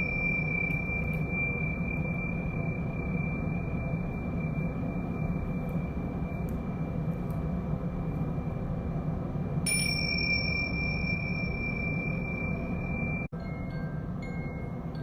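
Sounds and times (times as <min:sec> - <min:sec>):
gong ringing: 0:00.0 - 0:03.9, 0:09.7 - 0:13.3.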